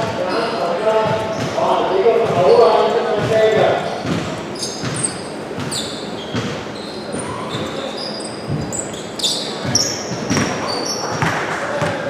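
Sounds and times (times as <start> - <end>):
sneaker squeaks on floor: 0.0 - 12.0
basketball bouncing: 1.0 - 1.6, 2.2 - 6.7, 9.6 - 12.0.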